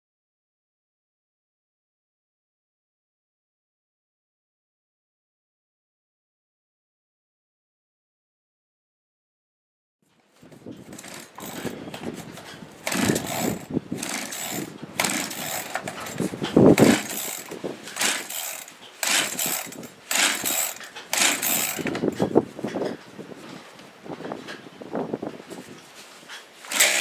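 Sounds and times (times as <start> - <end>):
chainsaw starter cord yanked: 10.6 - 22.4, 26.6 - 27.0.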